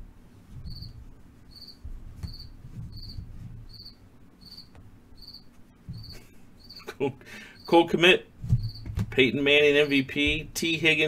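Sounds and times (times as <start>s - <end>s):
cricket chirping: 0.6s - 6.9s, 8.6s - 8.8s.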